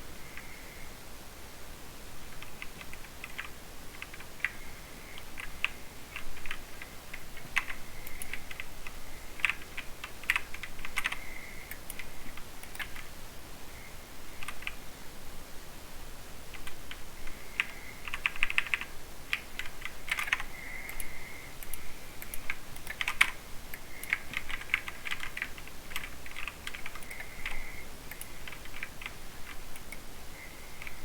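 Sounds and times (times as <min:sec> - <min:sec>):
mechanical keyboard typing: 0:02.4 - 0:04.6, 0:05.3 - 0:13.1, 0:17.6 - 0:23.4, 0:24.0 - 0:30.0.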